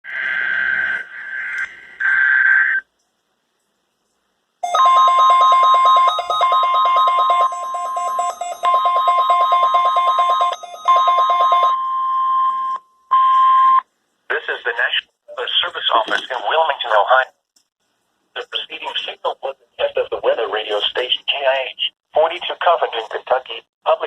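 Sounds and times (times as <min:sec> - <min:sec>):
rapid pulsing alarm beeps: 0:04.6 - 0:13.8
steady warning alarm tone: 0:04.6 - 0:13.8.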